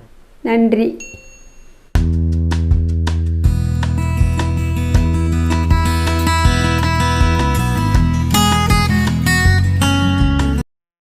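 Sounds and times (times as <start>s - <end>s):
steady low beat: 2.0s - 9.9s
strummed guitar music: 2.0s - 10.6s.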